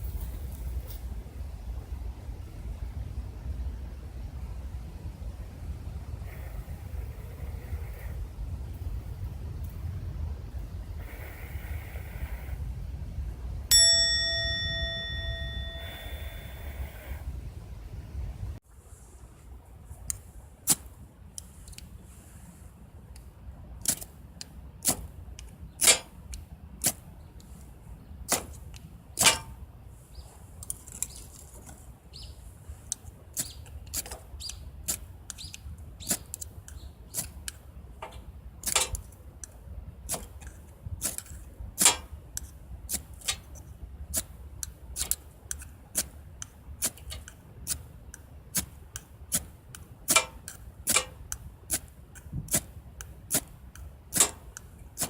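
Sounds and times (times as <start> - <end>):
low rumble: 0.0 - 18.6.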